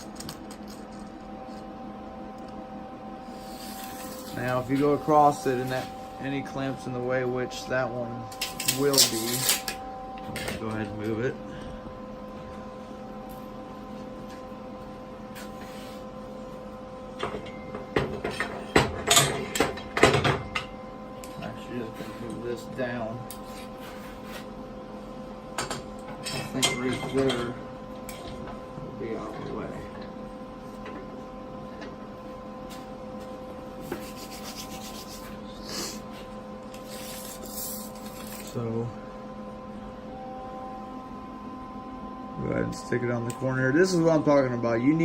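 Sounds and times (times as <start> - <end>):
steady hum: 0.0 - 45.0
tools and steel scraping: 3.3 - 6.9, 8.2 - 10.7.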